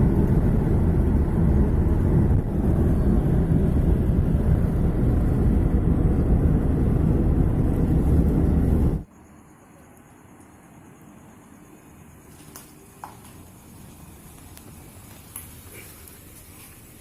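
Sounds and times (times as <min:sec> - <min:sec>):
wind buffeting microphone: 0:00.0 - 0:09.0
faint hiss: 0:08.0 - 0:17.0.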